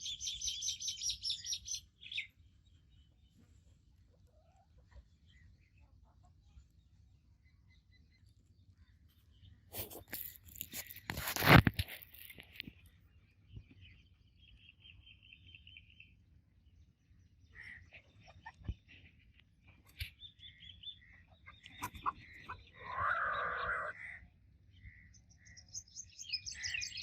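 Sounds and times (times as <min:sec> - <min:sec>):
full bird call: 0:00.0 - 0:02.4, 0:20.0 - 0:27.0
small birds chirping: 0:00.0 - 0:27.0.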